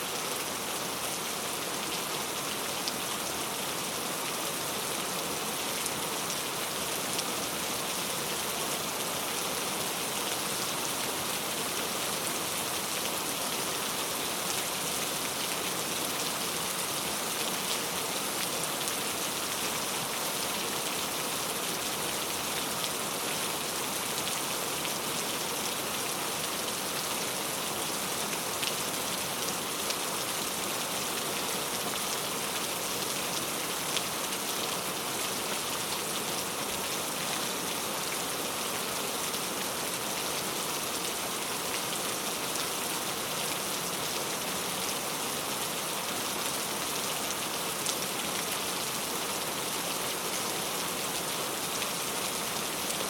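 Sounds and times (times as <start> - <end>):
steady rain falling: 0.0 - 53.0.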